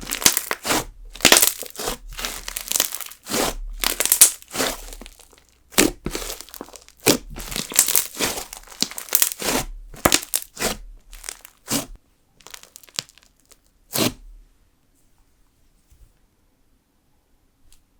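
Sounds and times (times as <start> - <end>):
slime popping and crunching: 0.0 - 14.2.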